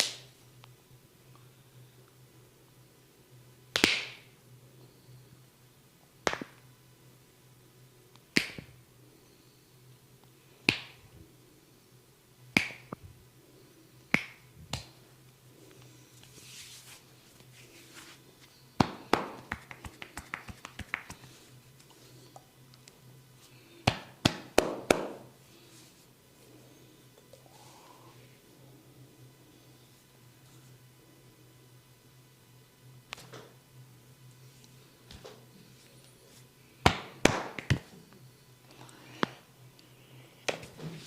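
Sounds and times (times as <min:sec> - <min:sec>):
finger snaps: 0:08.4 - 0:08.7, 0:10.7 - 0:11.0, 0:12.5 - 0:13.0, 0:14.1 - 0:14.9.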